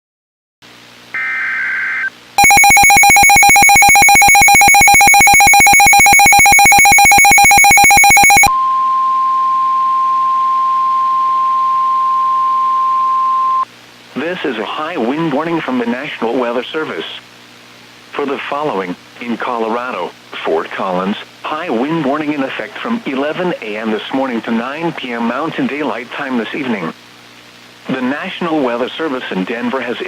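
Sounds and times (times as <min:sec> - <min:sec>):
digital data burst: 0:01.2 - 0:08.5
rapidly pulsing warning alarm: 0:02.4 - 0:08.5
steady warning tone: 0:02.4 - 0:13.6.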